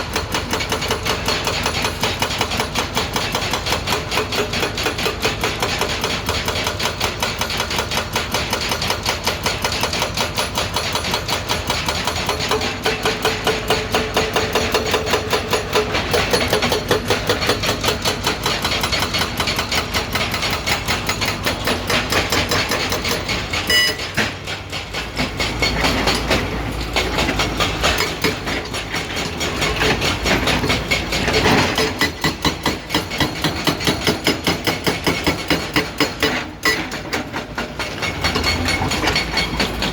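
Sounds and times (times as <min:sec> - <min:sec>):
hydraulic breaker hammering: 0:00.0 - 0:39.9
excavator engine rumble: 0:18.1 - 0:31.9, 0:36.5 - 0:39.9.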